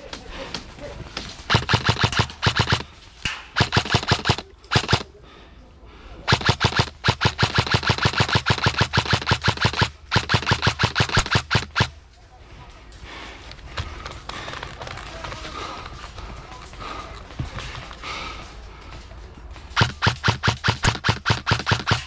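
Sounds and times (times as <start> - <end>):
airsoft guns firing rapid shots: 1.2 - 5.2, 6.2 - 12.0, 19.7 - 22.0.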